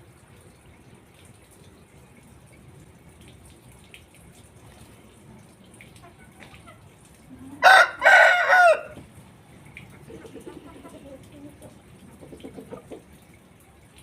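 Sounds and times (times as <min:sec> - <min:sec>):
rooster crowing: 0:07.6 - 0:09.0.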